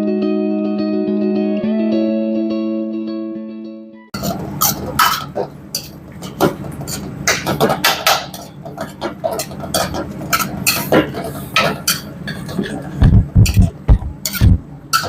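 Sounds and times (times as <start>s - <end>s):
kitchen utensils and dishes clattering: 4.2s - 15.0s
steady low hum: 4.2s - 15.0s.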